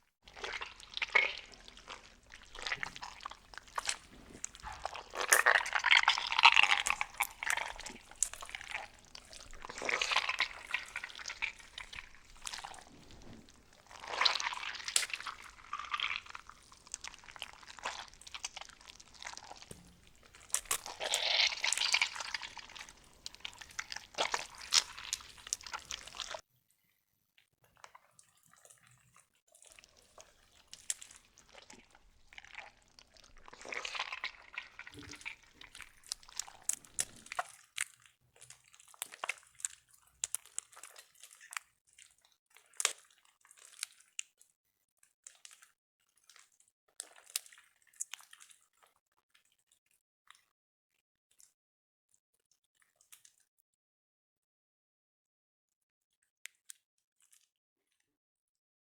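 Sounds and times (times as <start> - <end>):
slime squelching and popping: 0.3 - 26.4, 29.7 - 38.0.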